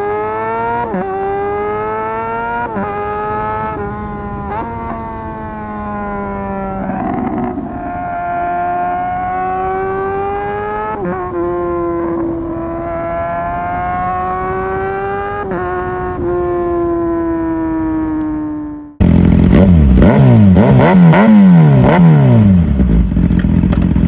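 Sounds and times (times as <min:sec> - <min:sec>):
motorcycle engine shifting gears: 0:00.0 - 0:24.0.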